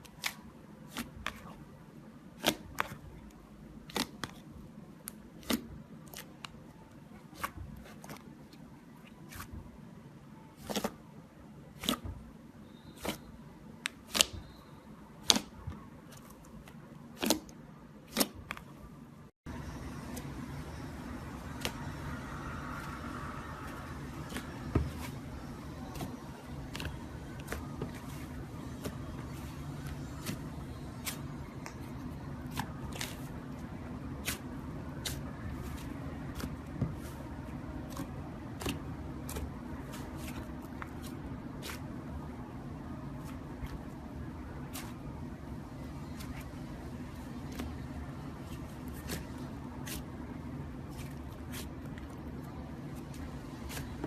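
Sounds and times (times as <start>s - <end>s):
low hum: 19.5s - 50.8s.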